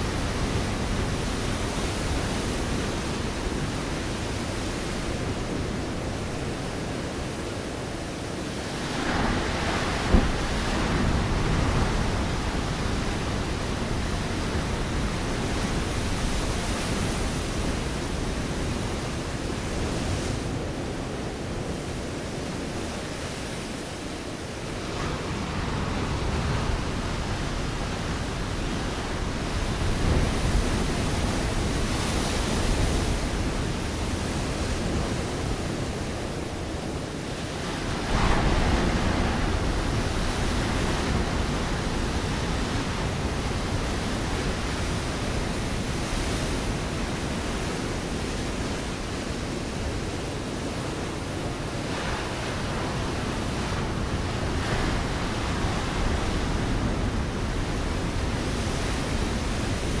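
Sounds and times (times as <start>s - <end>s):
wave crashing: 8.5s - 18.4s, 24.8s - 60.0s
waves breaking on rocks: 8.6s - 18.9s, 24.8s - 60.0s.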